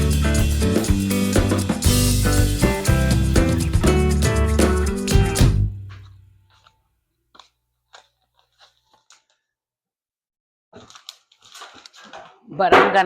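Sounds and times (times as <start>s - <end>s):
background music: 0.0s - 5.9s
light crinkling: 5.9s - 9.5s, 10.8s - 12.5s.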